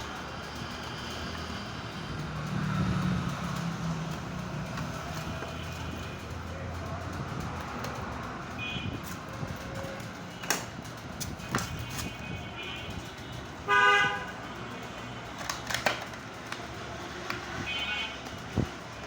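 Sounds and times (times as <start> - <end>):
traffic: 0.0 - 19.0
vehicle horn toot: 13.6 - 14.4.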